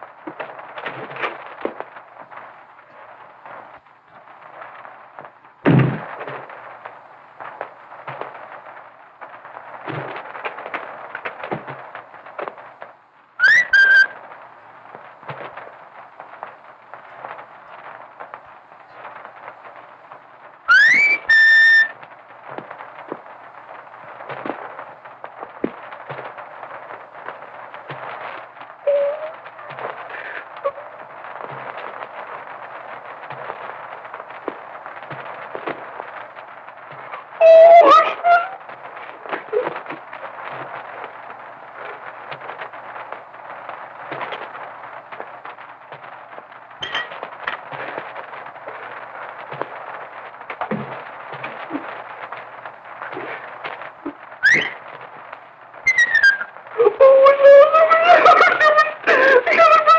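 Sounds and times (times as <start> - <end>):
film soundtrack crackle and hiss: 0.0 - 59.9
rising whistle: 13.4 - 14.2, 20.7 - 22.0, 28.9 - 29.4, 37.4 - 38.6, 55.8 - 58.8.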